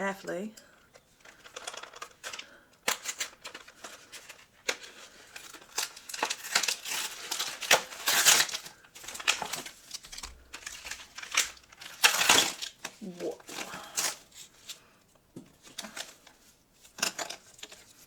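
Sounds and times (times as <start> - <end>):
plastic packaging crinkling: 1.0 - 14.8
plastic tearing: 1.1 - 14.8.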